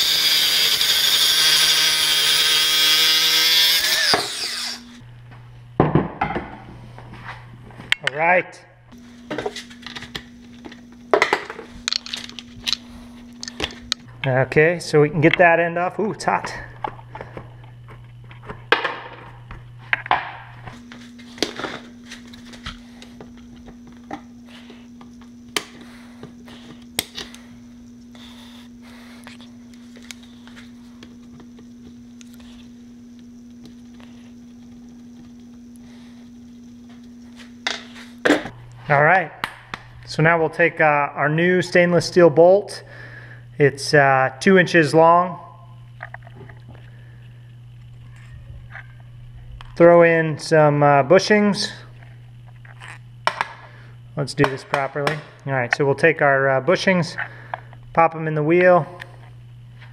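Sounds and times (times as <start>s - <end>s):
cutoff wheel whining: 0.0s - 5.0s
low hum: 0.0s - 59.9s
knocks and clicks of metal pieces: 11.9s - 12.8s.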